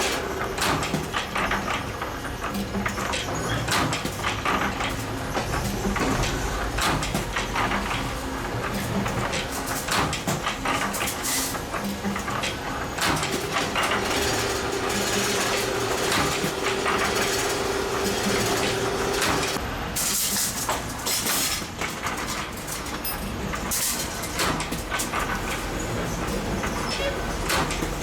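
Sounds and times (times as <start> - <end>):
machine clattering and clicking: 0.0 - 28.0
steady machine hum: 4.3 - 19.9.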